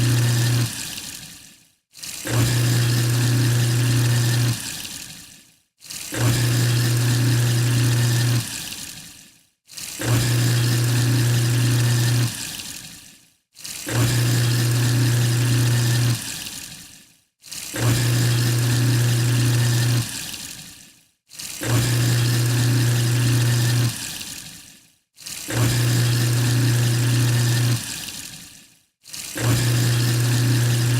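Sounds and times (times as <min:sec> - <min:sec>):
garbage disposal motor hum: 0:00.0 - 0:00.8, 0:02.3 - 0:04.6, 0:06.2 - 0:08.4, 0:10.0 - 0:12.3, 0:13.9 - 0:16.2, 0:17.8 - 0:20.1, 0:21.6 - 0:24.0, 0:25.5 - 0:27.9, 0:29.4 - 0:30.9
grinding and watery noise: 0:00.0 - 0:28.4, 0:29.0 - 0:30.9.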